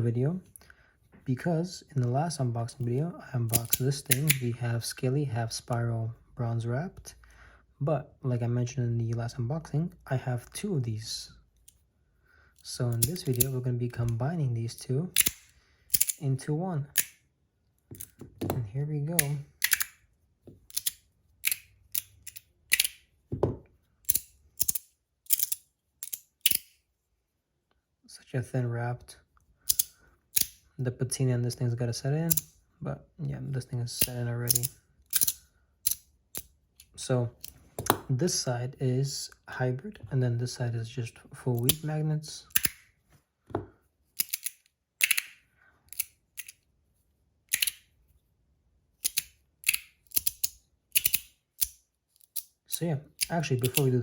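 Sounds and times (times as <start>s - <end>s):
fidget toy metallic clicks: 24.0s - 26.7s, 49.0s - 52.5s.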